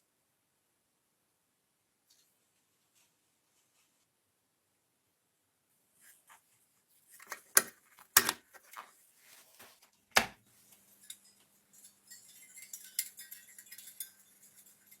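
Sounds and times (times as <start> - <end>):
rattling clinks: 11.0 - 15.0.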